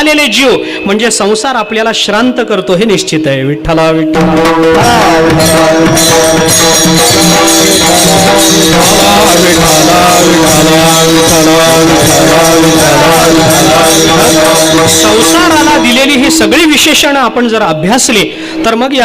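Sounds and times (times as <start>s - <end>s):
steady held drone: 4.2s - 17.3s
voices chanting a melody: 4.7s - 16.7s
small hand cymbals jingling: 4.8s - 17.1s.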